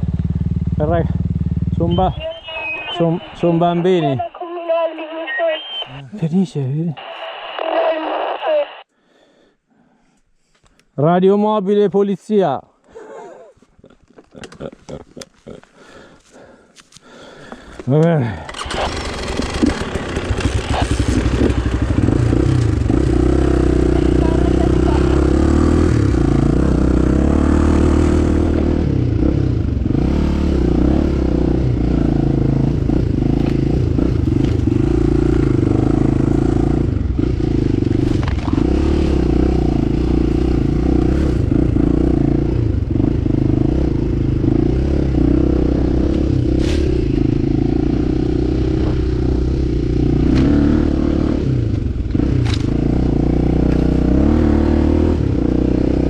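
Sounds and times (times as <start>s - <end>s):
motorcycle engine running: 0.0s - 2.2s, 18.5s - 56.0s.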